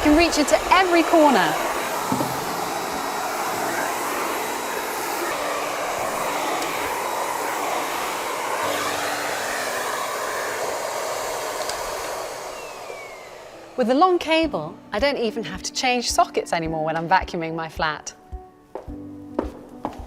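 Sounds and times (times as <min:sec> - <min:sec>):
vacuum cleaner running: 0:00.0 - 0:15.6.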